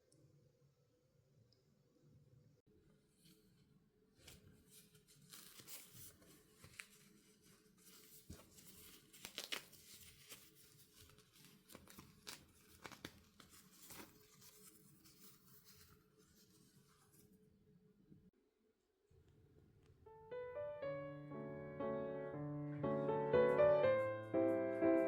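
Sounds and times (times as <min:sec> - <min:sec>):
paper rustling and scratching: 0:04.2 - 0:17.4.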